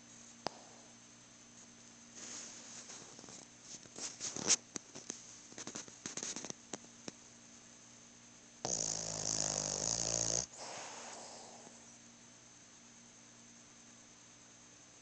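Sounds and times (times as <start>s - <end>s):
person snoring: 8.7s - 11.8s.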